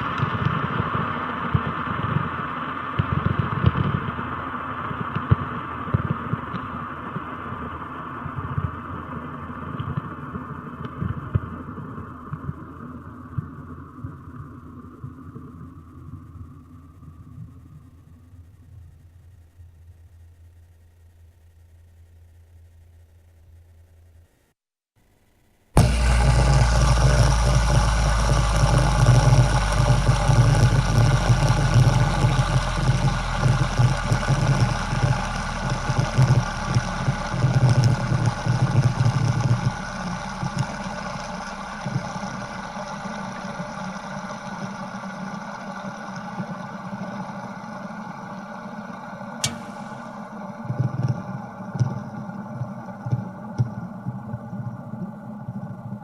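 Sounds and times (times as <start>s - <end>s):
engine running: 25.8s - 53.3s
sharp click: 49.4s - 50.1s.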